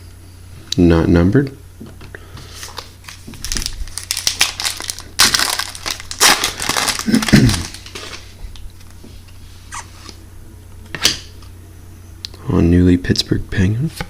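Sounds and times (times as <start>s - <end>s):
wrapper crinkling and tearing: 2.7s - 8.3s.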